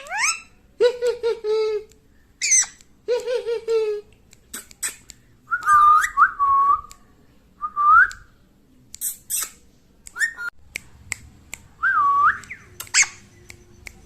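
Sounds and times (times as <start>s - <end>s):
parrot squawking: 0.0s - 0.6s, 2.4s - 2.8s, 12.5s - 13.3s.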